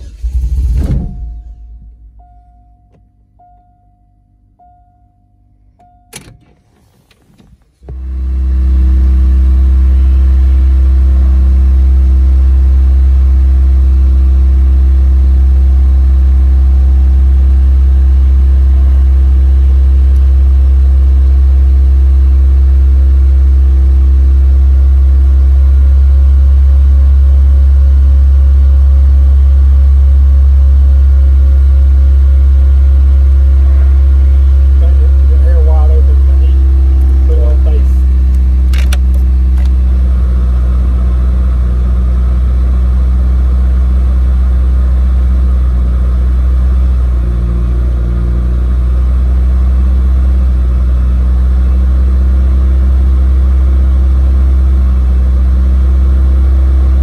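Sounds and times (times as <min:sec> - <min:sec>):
car engine running loudly: 0:07.9 - 0:57.0
engine cranking: 0:38.2 - 0:39.8
starter click: 0:38.3 - 0:39.8.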